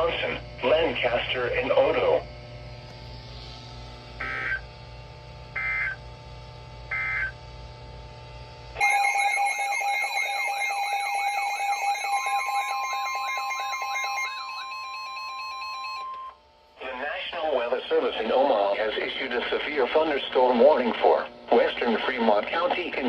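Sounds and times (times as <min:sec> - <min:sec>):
warbling alert tone: 0:08.8 - 0:16.2.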